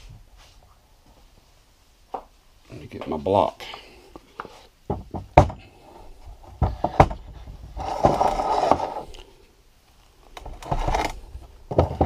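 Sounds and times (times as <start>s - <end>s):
wooden knocks: 4.9s - 5.7s, 6.5s - 8.8s
block scraping on bench: 6.6s - 9.2s, 10.4s - 12.0s.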